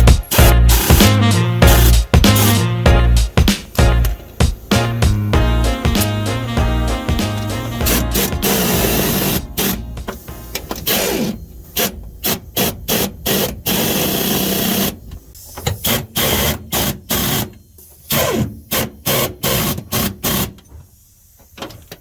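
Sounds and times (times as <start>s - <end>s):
welder crackling: 0.0s - 6.6s.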